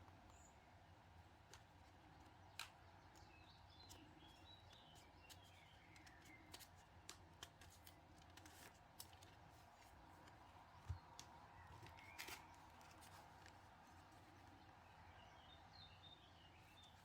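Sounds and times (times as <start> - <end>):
small birds chirping: 0.0 - 17.0
light clicks and taps: 1.4 - 14.6.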